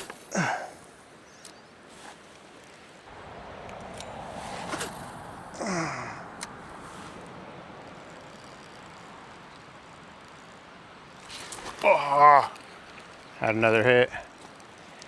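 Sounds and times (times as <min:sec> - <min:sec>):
steady outdoor hiss: 0:00.0 - 0:15.0
man sighing: 0:00.3 - 0:00.9, 0:05.6 - 0:06.5.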